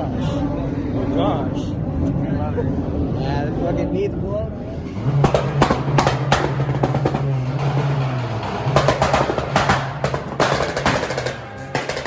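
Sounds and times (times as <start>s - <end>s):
sharp drum hits: 4.8s - 12.0s.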